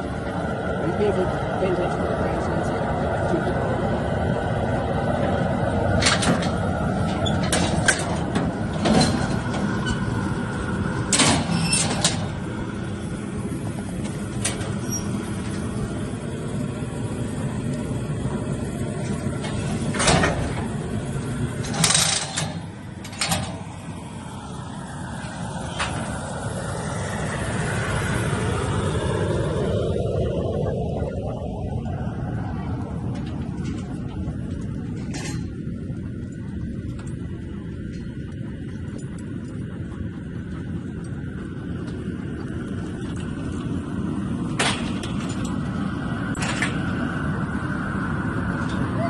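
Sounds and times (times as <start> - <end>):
steady low rumble: 0.0 - 49.0
metal gates clanking and banging: 6.0 - 10.2, 11.0 - 12.4, 19.4 - 20.8, 21.6 - 23.7.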